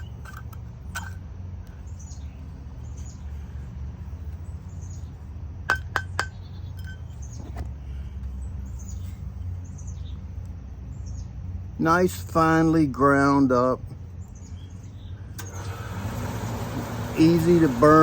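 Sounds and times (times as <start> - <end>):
metal grinder clinks: 0.0 - 1.2
birds chirping: 0.0 - 18.0
steady low hum: 0.0 - 18.0.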